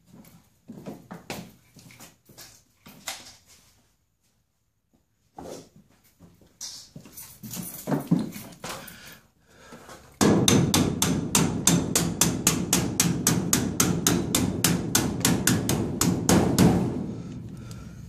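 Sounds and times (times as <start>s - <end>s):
hammer blows on sheet metal: 10.2s - 17.5s.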